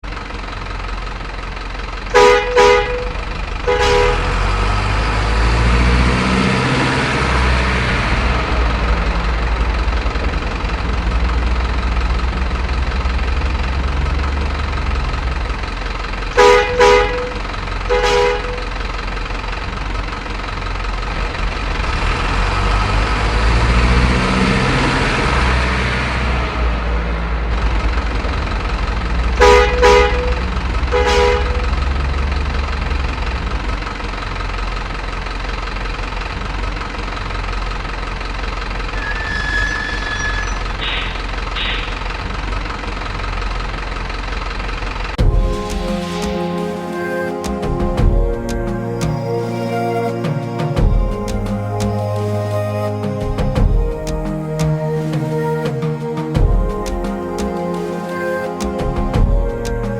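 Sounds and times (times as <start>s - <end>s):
simulated diesel truck engine: 0.0s - 59.9s
short horn toots: 2.2s - 4.6s, 16.4s - 18.8s, 29.4s - 31.8s, 45.2s - 59.9s.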